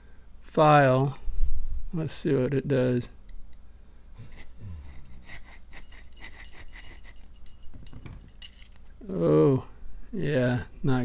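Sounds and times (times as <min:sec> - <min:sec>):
file rasping on steel: 0:04.2 - 0:07.2.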